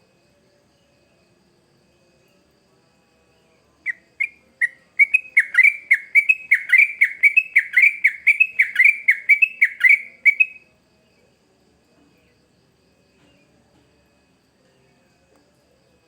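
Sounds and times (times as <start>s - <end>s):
bird singing short downslurred notes: 4.2s - 10.6s.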